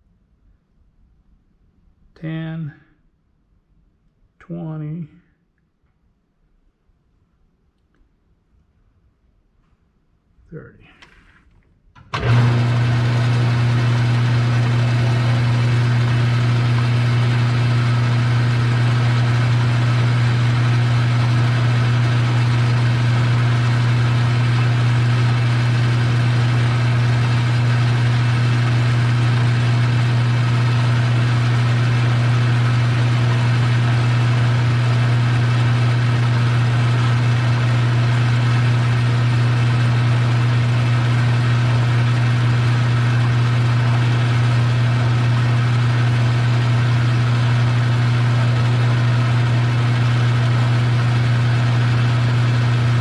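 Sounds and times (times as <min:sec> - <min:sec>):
metal lathe motor humming: 0:12.1 - 0:53.0.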